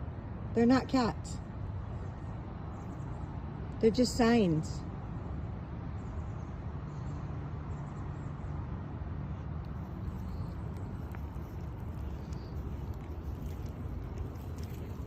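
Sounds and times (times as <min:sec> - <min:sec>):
faint low hum: 0:00.6 - 0:15.0
steady low rumble: 0:08.4 - 0:15.0.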